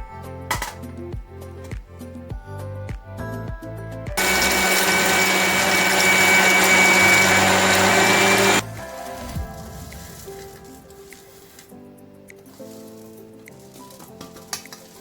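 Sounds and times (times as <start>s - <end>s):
electric blender grinding spices: 4.2s - 9.2s.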